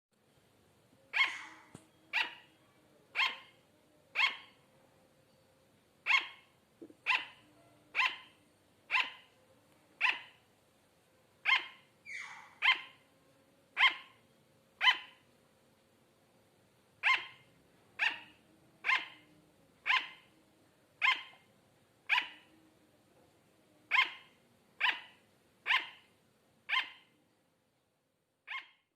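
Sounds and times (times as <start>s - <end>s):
sugar glider barking: 1.0s - 4.7s, 6.0s - 10.5s, 11.4s - 13.1s, 13.7s - 14.2s, 14.8s - 15.3s, 17.0s - 20.4s, 21.0s - 22.6s, 23.9s - 27.2s, 28.4s - 28.9s.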